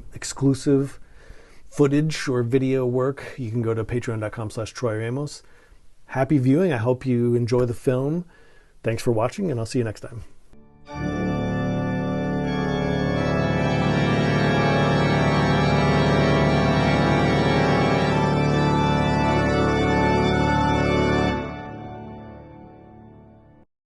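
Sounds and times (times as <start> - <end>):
sustained organ chord: 10.6 - 23.7.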